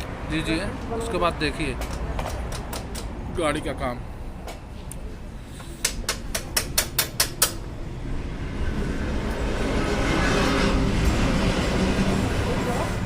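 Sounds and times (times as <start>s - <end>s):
low rumble of passing vehicle: 6.2s - 13.0s.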